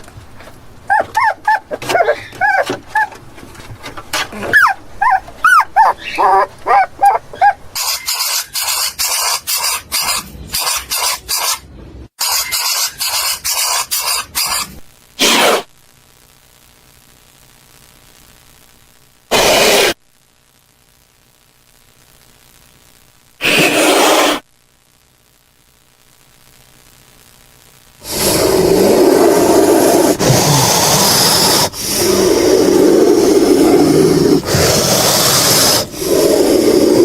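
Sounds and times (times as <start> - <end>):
dog whimpering and yelping: 0.9 - 3.2, 4.4 - 7.7
short hissing bursts: 12.2 - 15.7, 19.3 - 20.0, 23.4 - 24.4, 28.0 - 37.0.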